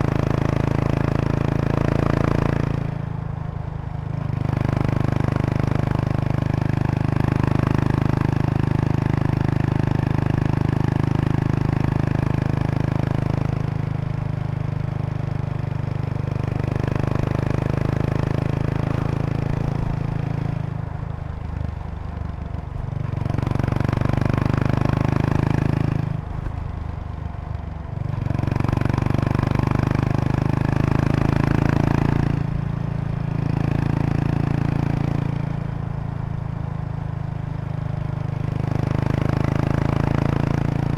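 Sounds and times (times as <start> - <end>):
motorcycle exhaust: 0.0 - 40.9.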